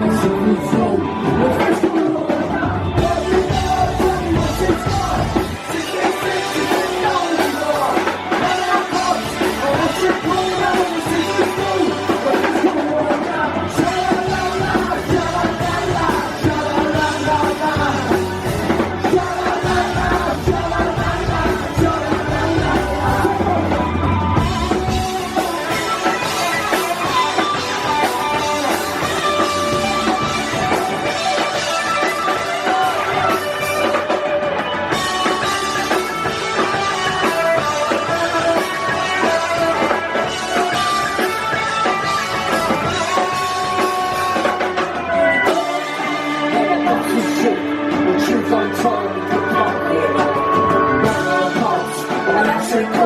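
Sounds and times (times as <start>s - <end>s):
live rock band playing: 0.0s - 53.0s
deep bass: 2.4s - 5.6s, 13.4s - 26.0s, 27.0s - 31.2s.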